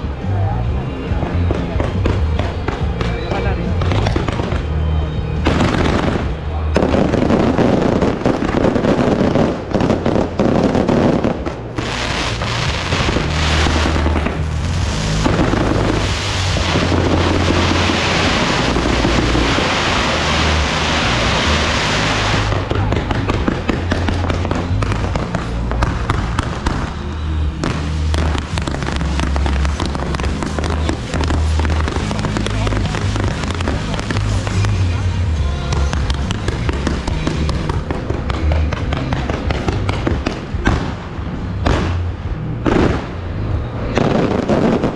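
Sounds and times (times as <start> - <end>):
fireworks crackling: 0.0 - 44.9
loud firework hiss: 5.5 - 35.1.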